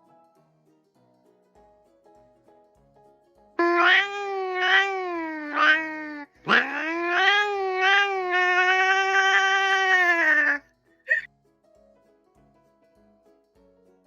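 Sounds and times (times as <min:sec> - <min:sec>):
faint plucked background music: 0:00.0 - 0:14.0
cat meowing: 0:03.6 - 0:11.3.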